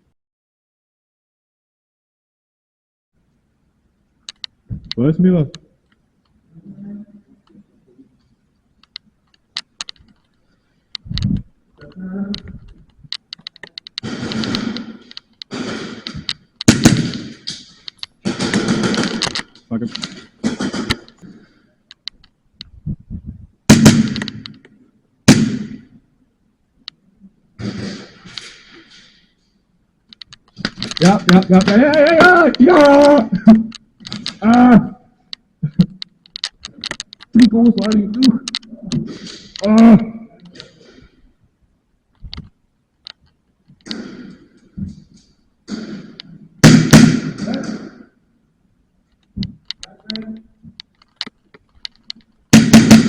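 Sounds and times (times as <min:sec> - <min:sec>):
sharp clicks and knocks: 0:04.2 - 0:06.4, 0:08.7 - 0:22.8, 0:23.7 - 0:25.9, 0:30.1 - 0:34.4, 0:35.3 - 0:39.7, 0:42.1 - 0:48.1, 0:49.1 - 0:53.0
pistol shots echoing: 0:14.0 - 0:17.6, 0:18.2 - 0:19.4, 0:20.4 - 0:21.1, 0:23.7 - 0:24.4, 0:25.3 - 0:25.9, 0:46.6 - 0:48.0, 0:52.5 - 0:53.0.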